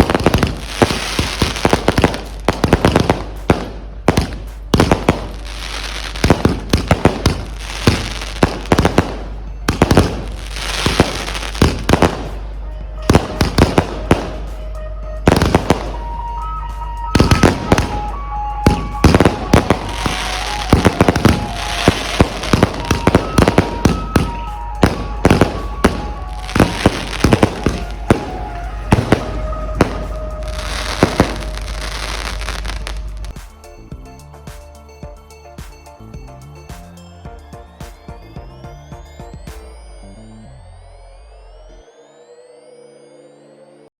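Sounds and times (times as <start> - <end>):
fireworks sharp bangs: 0.0 - 16.3, 17.2 - 33.4
melody: 0.0 - 43.9.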